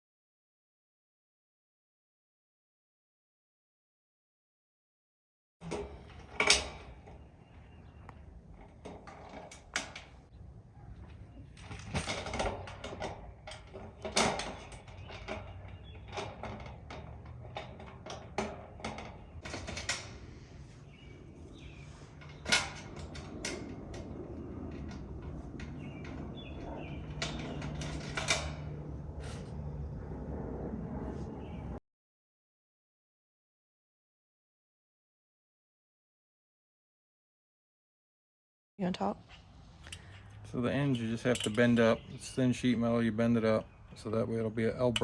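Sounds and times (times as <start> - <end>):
sheet metal panels clanking: 11.2 - 20.3, 20.9 - 29.4.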